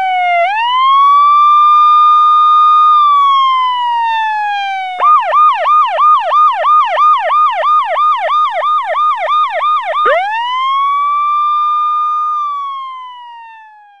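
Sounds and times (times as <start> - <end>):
electronic siren yelp and wail: 10.1 - 10.4.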